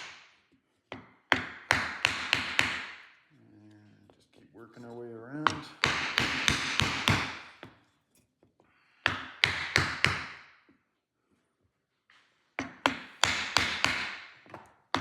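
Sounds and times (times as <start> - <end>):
hammer knocking on wooden block: 0.9 - 3.1, 5.4 - 7.7, 9.0 - 10.4, 12.6 - 15.0.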